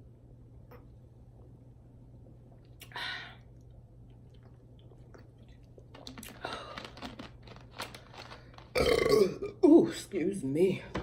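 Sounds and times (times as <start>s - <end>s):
food being chewed: 2.5s - 9.2s.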